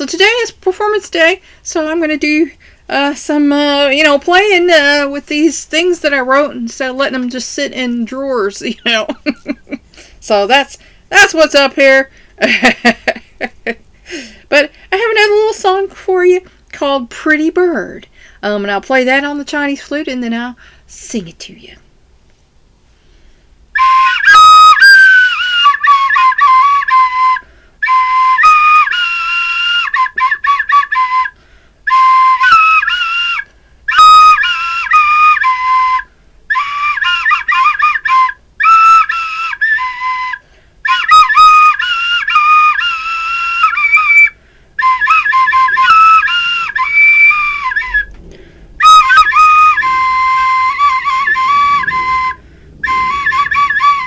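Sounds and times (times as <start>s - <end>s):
breaths: 1.4s - 1.6s, 2.6s - 2.9s, 9.8s - 10.2s, 10.8s - 11.1s, 12.1s - 12.4s, 13.9s - 14.9s, 16.4s - 16.7s, 18.1s - 18.4s, 20.6s - 20.9s, 22.8s - 23.7s, 27.4s - 27.8s, 31.4s - 31.9s, 33.5s - 33.9s, 36.1s - 36.4s, 40.4s - 40.8s, 44.3s - 44.8s, 48.1s - 48.8s, 52.2s - 53.2s
flute playing slow melody: 23.7s - 54.0s.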